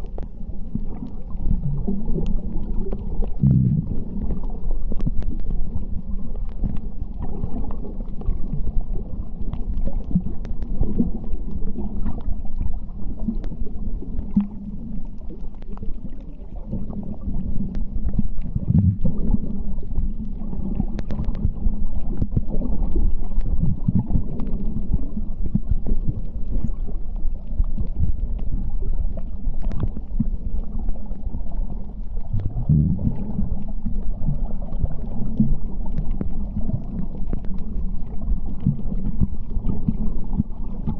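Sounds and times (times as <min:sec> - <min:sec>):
muffled underwater rumble: 0:00.0 - 0:40.9
faint clicks: 0:04.2 - 0:05.6, 0:09.5 - 0:12.4, 0:20.1 - 0:24.7, 0:29.1 - 0:30.3.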